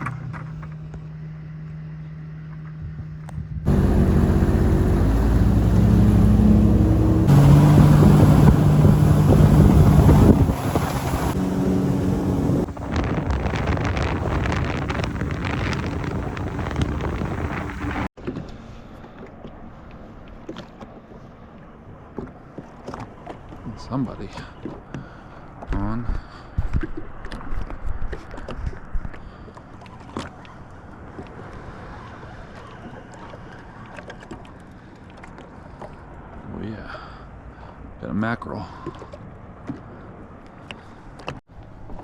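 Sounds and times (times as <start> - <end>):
motorboat engine running: 0.1 - 18.1
wind on microphone: 3.4 - 18.1
rough water rushing wash: 3.7 - 18.1.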